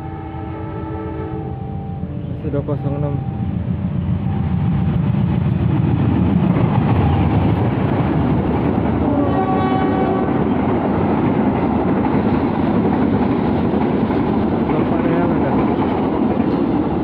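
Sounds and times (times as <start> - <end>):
horn-like tone: 0.0 - 4.6, 9.1 - 10.4
vehicle rumble: 1.5 - 9.2.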